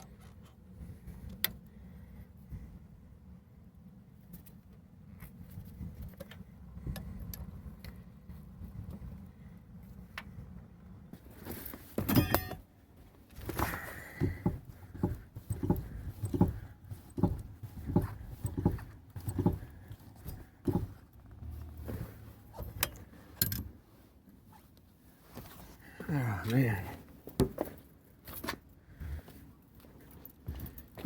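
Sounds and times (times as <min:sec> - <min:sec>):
metallic clinks and knocks: 0:12.0 - 0:12.7, 0:22.5 - 0:23.8.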